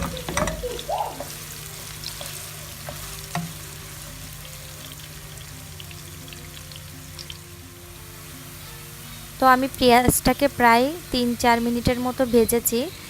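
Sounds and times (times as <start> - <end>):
pan knocking: 0.0 - 1.4
onions sizzling in hot oil: 0.0 - 13.0.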